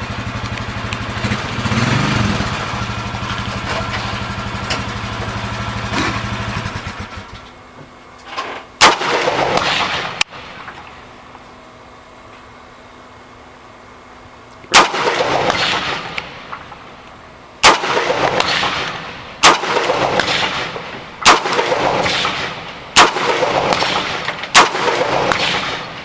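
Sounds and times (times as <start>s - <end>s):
rifle shots with long echo: 8.8s - 10.8s, 14.7s - 17.0s, 17.6s - 26.0s.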